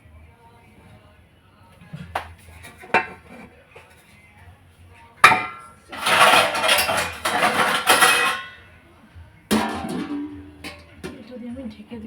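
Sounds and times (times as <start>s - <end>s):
metal cookware clattering and scraping: 2.4s - 4.2s, 5.2s - 8.7s, 9.5s - 11.2s
lid clanking down: 5.2s - 8.6s, 9.5s - 11.2s.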